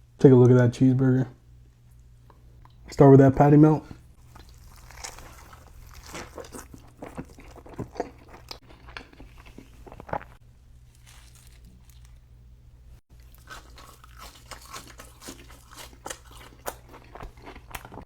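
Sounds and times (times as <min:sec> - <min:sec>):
person chewing food: 0:04.2 - 0:12.4, 0:13.1 - 0:18.0.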